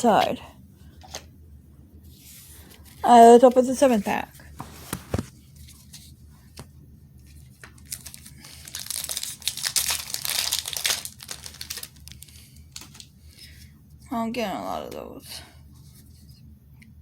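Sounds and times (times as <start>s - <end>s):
plastic wrapper tearing and crinkling: 7.7s - 13.1s.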